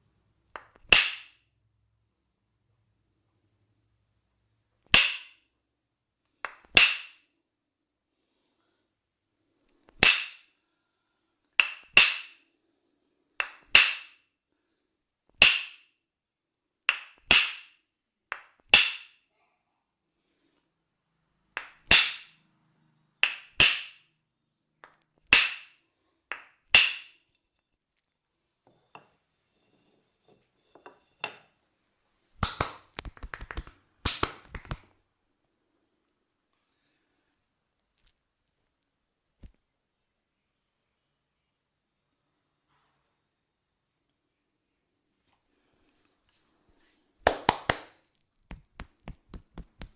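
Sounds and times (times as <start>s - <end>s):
percussive massage smacks: 32.4s - 35.0s, 47.3s - 49.9s
small massage cracks: 32.4s - 35.0s, 47.2s - 49.9s.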